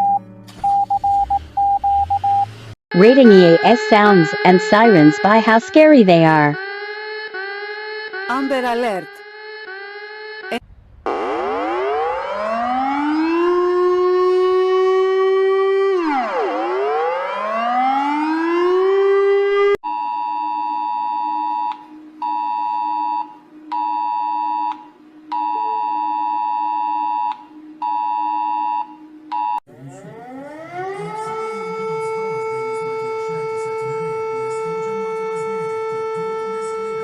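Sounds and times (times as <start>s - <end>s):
two-tone alert beeping: 0.0s - 6.6s
rising electronic siren glide: 0.5s - 37.0s
siren wailing: 0.5s - 37.0s.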